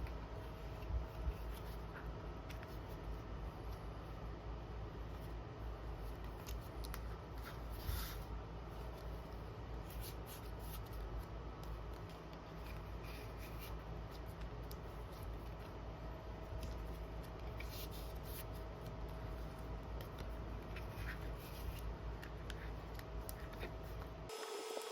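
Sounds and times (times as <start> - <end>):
rustling and scratching of craft materials: 0.0 - 24.3
steady low hum: 0.0 - 24.9.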